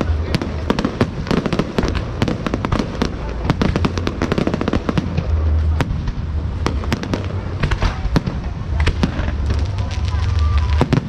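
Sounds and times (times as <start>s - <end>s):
fireworks bangs and cracks: 0.0s - 11.0s
low rumble: 0.0s - 11.0s.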